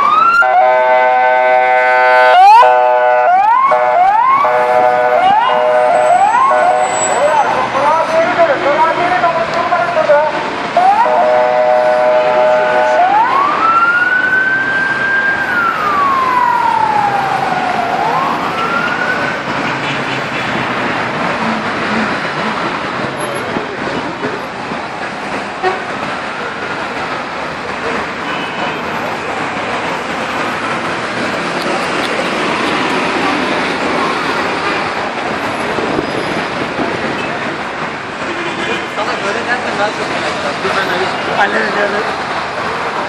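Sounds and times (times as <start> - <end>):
emergency vehicle siren wailing: 0.0 - 23.6
loud traffic noise: 0.0 - 43.0.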